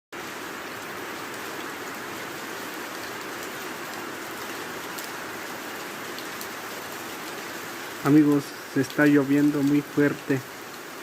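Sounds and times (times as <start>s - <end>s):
heavy rain falling: 0.2s - 11.0s
rain drop ticks: 8.0s - 10.4s.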